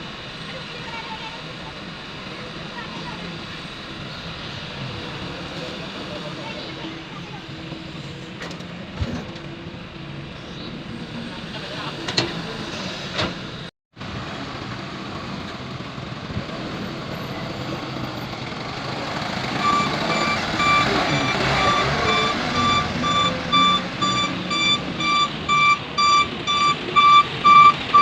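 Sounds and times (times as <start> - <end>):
heavy diesel machinery running: 0.0 - 28.0
reversing alarm beeping: 19.6 - 28.0.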